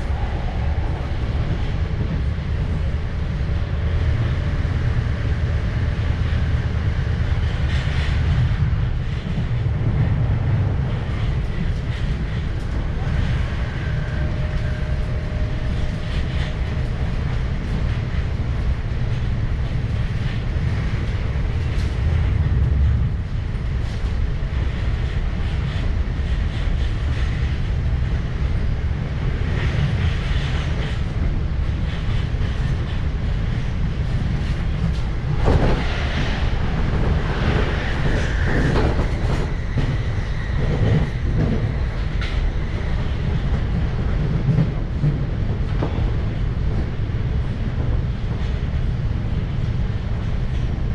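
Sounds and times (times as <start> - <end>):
train wheels rumbling: 0.0 - 50.9.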